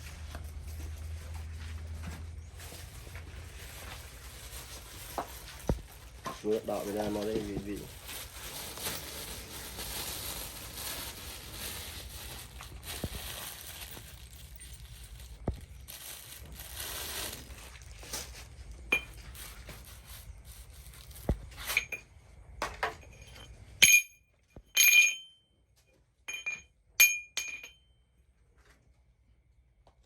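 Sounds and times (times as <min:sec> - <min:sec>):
knocks and handling noise: 0:18.0 - 0:27.8
metal pieces clinking: 0:21.6 - 0:22.0, 0:22.9 - 0:25.3, 0:26.3 - 0:27.8.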